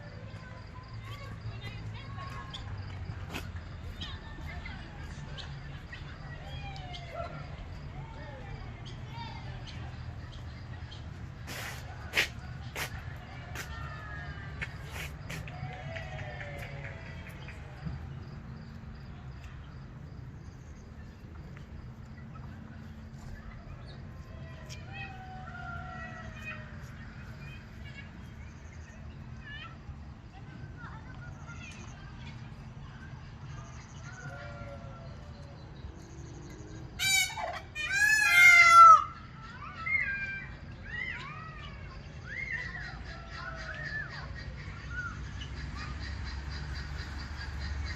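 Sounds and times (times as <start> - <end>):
birds wailing calls: 33.5 - 47.9.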